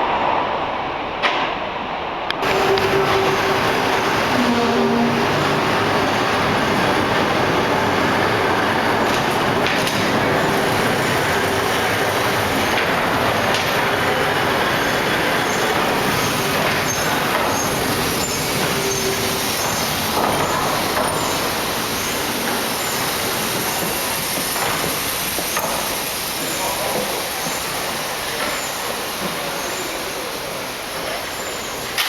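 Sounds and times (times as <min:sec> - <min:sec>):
train wheels rumbling on rail: 0:00.0 - 0:32.0
faint high wheel squeals: 0:10.3 - 0:24.5.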